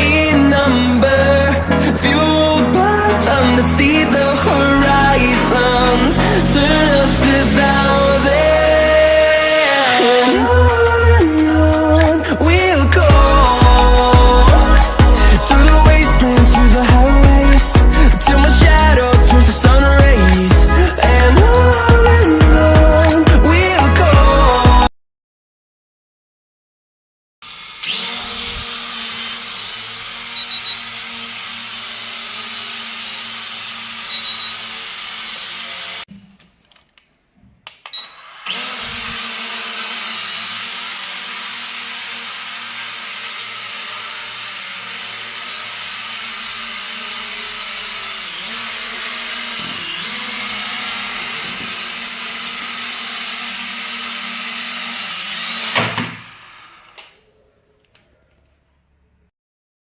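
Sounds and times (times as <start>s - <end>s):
drone propellers whining: 0.0s - 24.6s.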